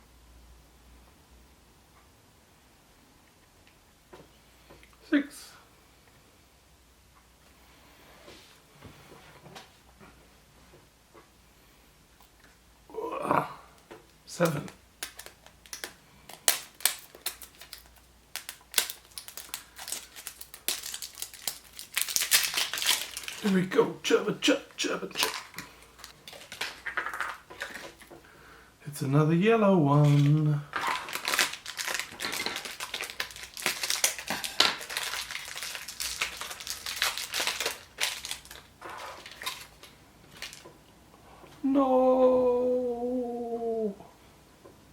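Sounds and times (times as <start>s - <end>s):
wrapper crinkling: 14.4s - 28.1s, 29.9s - 40.7s.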